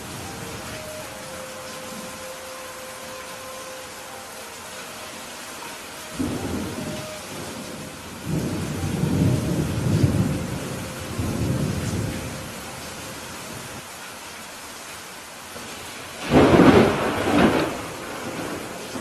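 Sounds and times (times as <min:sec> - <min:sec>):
steady rain: 0:00.0 - 0:19.0
rolling thunder: 0:06.2 - 0:12.6, 0:16.2 - 0:19.0.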